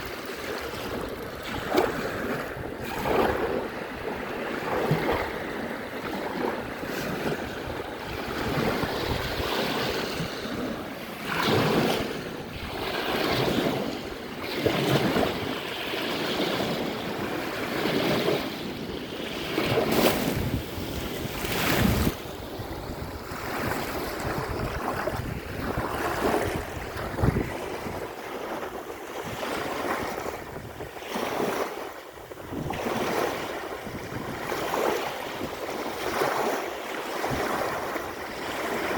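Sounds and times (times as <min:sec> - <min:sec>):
waves breaking on shore: 0:00.0 - 0:38.9
wind buffeting microphone: 0:00.0 - 0:38.9.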